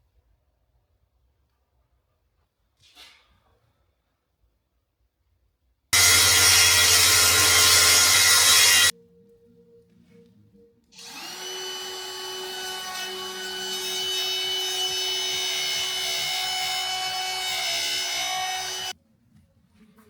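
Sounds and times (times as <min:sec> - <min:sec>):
power tool motor whine: 0:06.0 - 0:08.9, 0:11.0 - 0:18.9.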